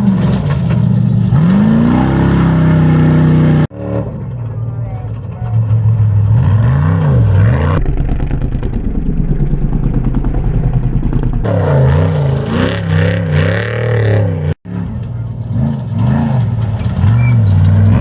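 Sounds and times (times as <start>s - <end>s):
race vehicle engines revving: 0.0s - 7.8s, 11.4s - 18.0s.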